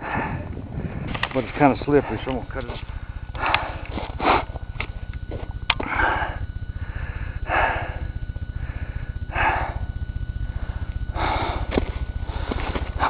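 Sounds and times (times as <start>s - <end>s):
person breathing hard: 0.0s - 1.2s, 3.0s - 4.5s, 5.8s - 10.0s, 11.1s - 13.0s
wind rumble on microphone: 0.0s - 7.4s.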